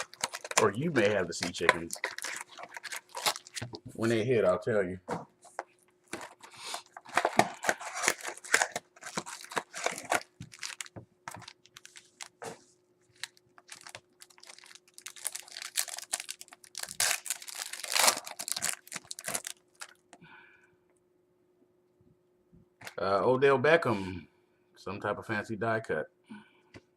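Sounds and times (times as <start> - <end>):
card wrappers tearing and crinkling: 0.0 - 3.8, 6.1 - 20.0
cards being handled: 0.0 - 3.9, 5.4 - 19.4
faint steady hum: 0.0 - 26.9.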